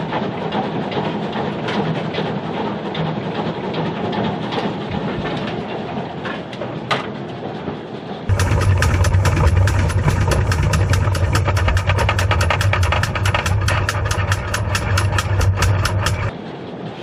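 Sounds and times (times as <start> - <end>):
steam locomotive rumbling: 0.0 - 17.0
wheels clicking on rails: 0.0 - 17.0
low drone with rapid beats: 8.3 - 16.4.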